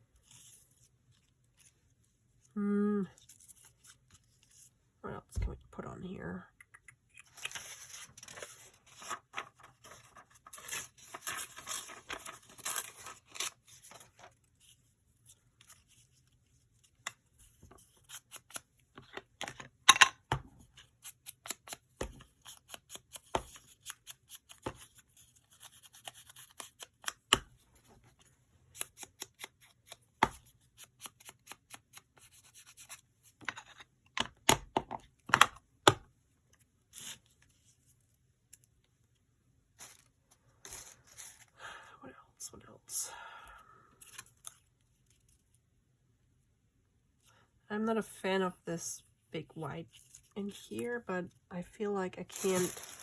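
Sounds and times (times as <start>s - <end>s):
paper rustling: 7.4s - 14.8s, 52.3s - 53.0s
scissors cutting paper: 20.7s - 27.5s, 28.7s - 33.0s.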